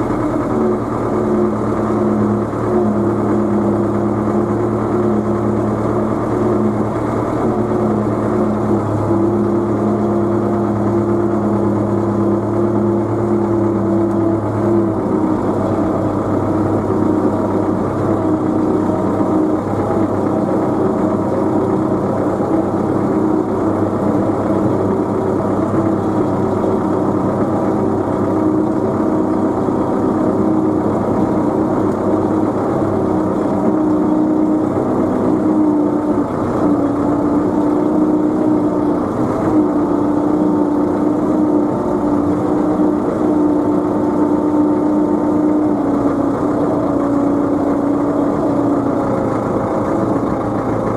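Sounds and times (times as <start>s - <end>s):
tractor engine running: 0.0s - 50.9s.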